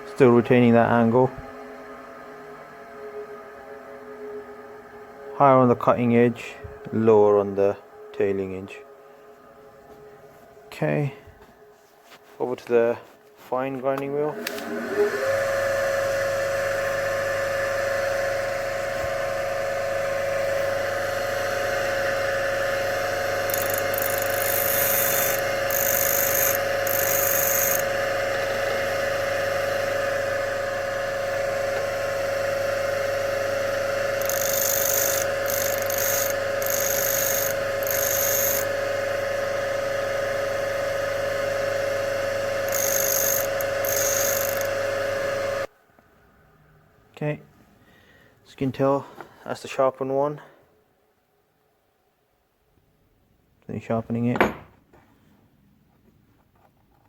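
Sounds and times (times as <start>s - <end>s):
bench grinder whine: 0.0s - 10.5s, 14.3s - 45.7s
drill bit grinding hiss: 22.2s - 30.0s, 34.0s - 38.8s, 42.6s - 44.9s.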